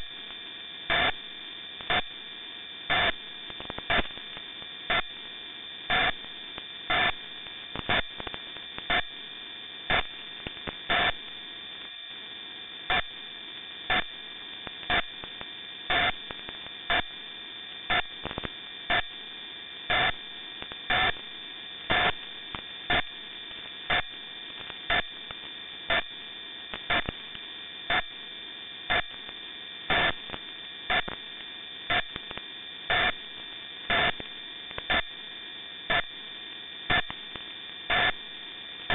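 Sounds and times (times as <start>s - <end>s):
hissy humming radio band: 0.0s - 13.3s.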